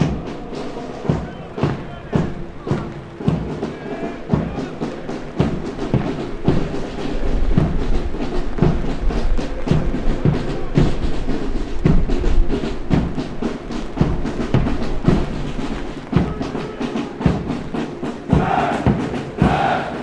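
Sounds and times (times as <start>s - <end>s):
men's voices in unison: 0.0s - 8.0s, 16.3s - 20.0s
boots marching on pavement: 1.1s - 20.0s.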